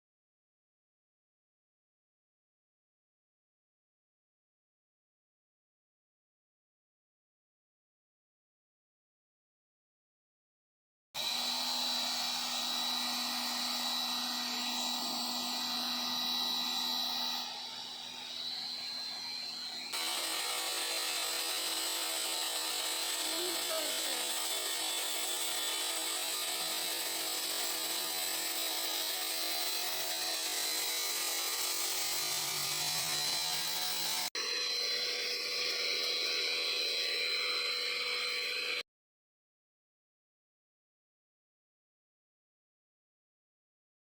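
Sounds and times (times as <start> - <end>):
pressure washer running: 11.2 - 34.3.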